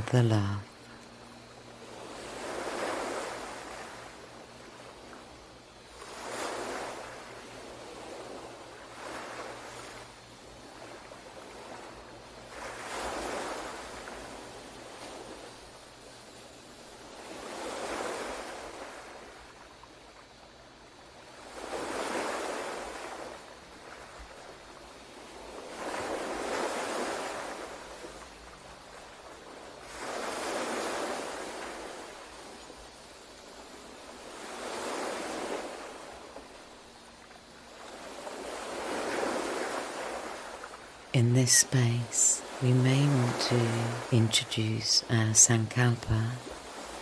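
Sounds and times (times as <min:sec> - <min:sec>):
ocean waves washing in: 0:00.0 - 0:47.0.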